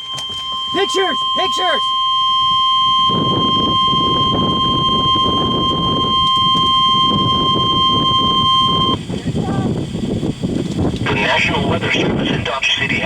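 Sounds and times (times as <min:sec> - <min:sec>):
steady high alarm beep: 0:00.0 - 0:09.0.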